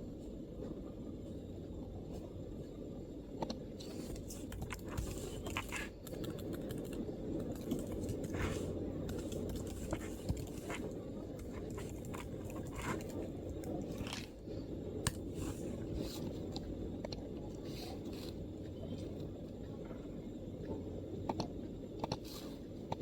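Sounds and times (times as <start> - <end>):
low background rumble: 0.0 - 23.0
laptop keyboard typing: 4.1 - 14.3.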